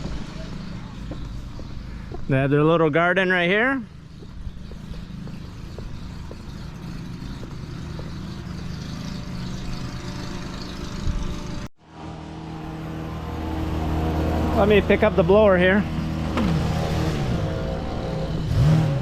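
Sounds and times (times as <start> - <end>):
engine running steadily: 3.8 - 19.0.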